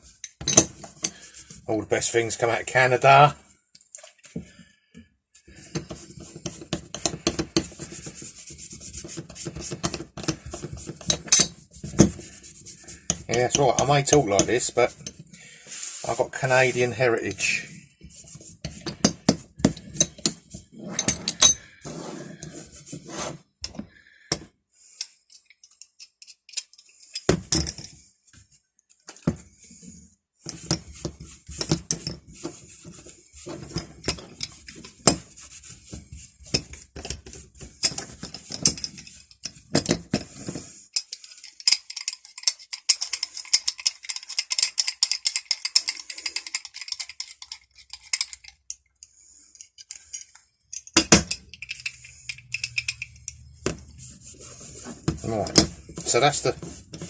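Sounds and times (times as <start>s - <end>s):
metal wrenches knocking and clinking: 0.2s - 1.2s, 9.7s - 12.2s, 13.0s - 15.2s, 18.6s - 21.6s, 33.5s - 35.3s, 36.5s - 40.4s, 41.0s - 48.8s, 49.6s - 53.9s, 54.9s - 57.0s.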